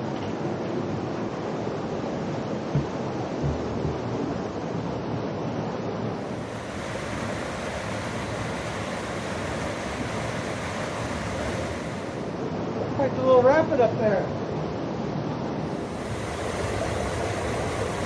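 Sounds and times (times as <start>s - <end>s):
creek waterfall rushing: 6.2s - 12.4s, 15.7s - 18.0s.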